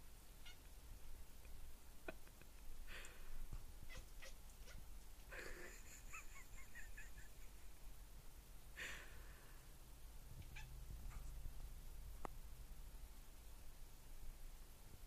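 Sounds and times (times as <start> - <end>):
cat chirping and chattering: 0.4 - 0.7, 3.8 - 7.7, 10.4 - 11.4.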